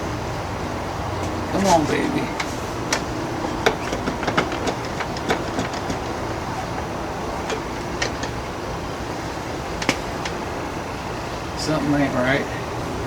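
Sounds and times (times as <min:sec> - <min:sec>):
steady background hum: 0:00.0 - 0:13.0
metallic clicks and knocks: 0:02.4 - 0:08.7, 0:09.6 - 0:10.4.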